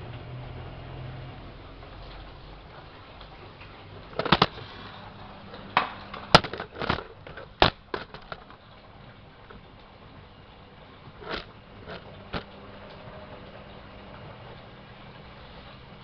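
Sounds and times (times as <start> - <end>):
washing machine humming: 0.0 - 16.0
knocks and clicks: 4.1 - 4.6, 5.8 - 8.6.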